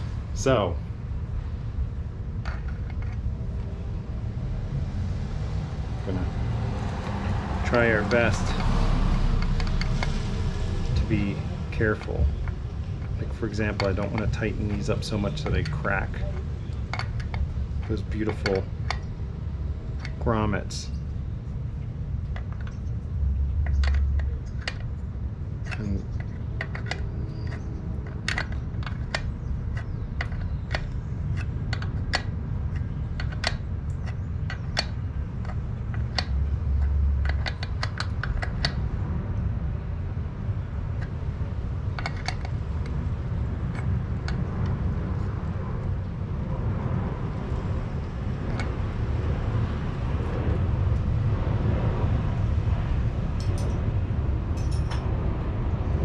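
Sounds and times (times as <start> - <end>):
low hum: 0.0 - 56.0
metallic clicks of hand tools: 53.4 - 53.8, 54.6 - 55.1.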